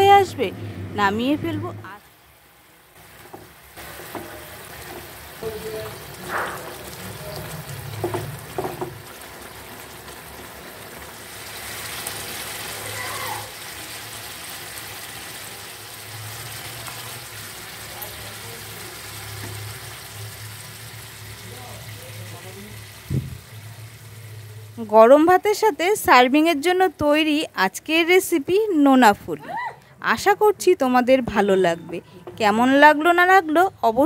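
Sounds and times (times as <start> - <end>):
curry simmering in a pan: 2.0 - 24.8.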